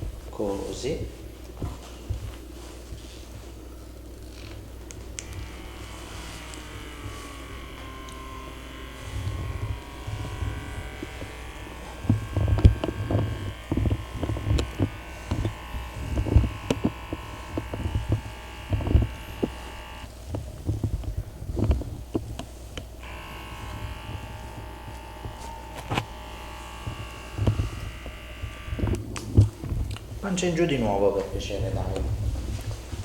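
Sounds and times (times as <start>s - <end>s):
small electric motor buzzing: 4.1s - 30.1s
low thumps: 5.2s - 30.2s.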